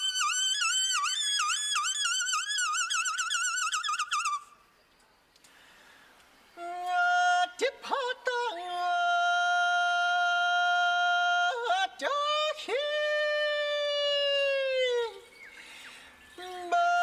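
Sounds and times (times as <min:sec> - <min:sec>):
person singing unaccompanied: 0:06.6 - 0:15.2, 0:16.4 - 0:17.0.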